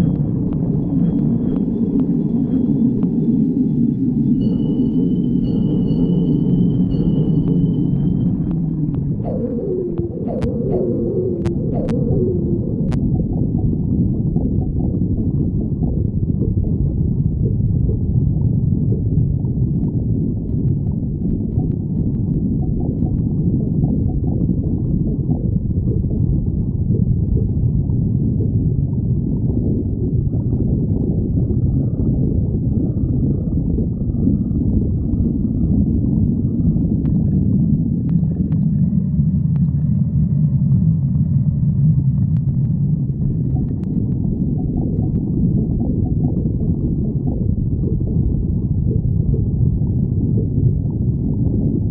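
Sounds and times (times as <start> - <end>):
stomach growling: 6.8 - 51.9.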